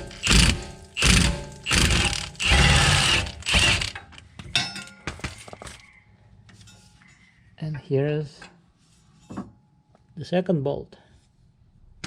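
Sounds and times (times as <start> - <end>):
impact wrench hammering: 0.0 - 4.0.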